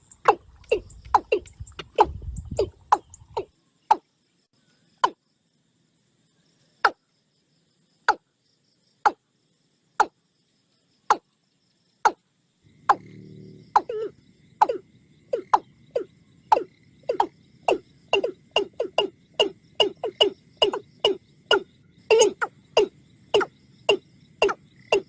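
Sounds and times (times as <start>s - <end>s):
animal short sharp calls: 12.8s - 25.0s.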